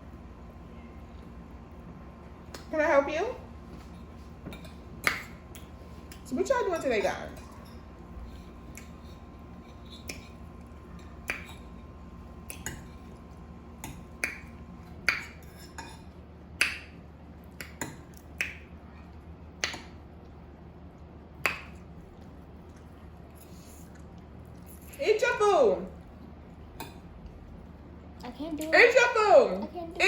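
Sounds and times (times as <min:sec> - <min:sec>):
people eating clicks and smacks: 0:02.4 - 0:02.7, 0:03.6 - 0:25.0.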